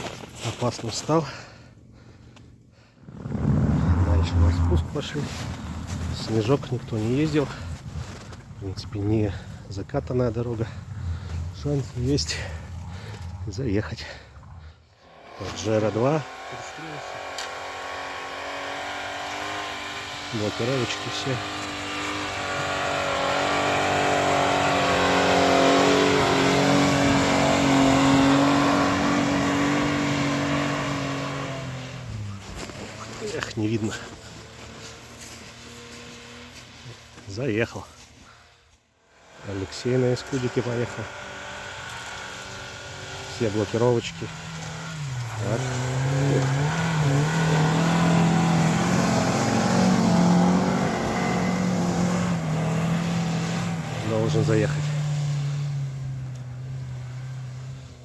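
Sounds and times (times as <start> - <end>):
engine revving hard: 3.2 - 8.3, 10.4 - 36.6, 39.1 - 58.0.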